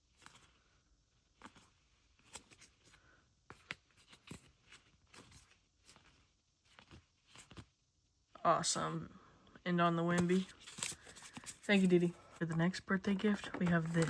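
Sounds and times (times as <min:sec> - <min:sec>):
trading cards being flipped: 0:00.1 - 0:00.5, 0:01.4 - 0:07.7, 0:10.1 - 0:14.0.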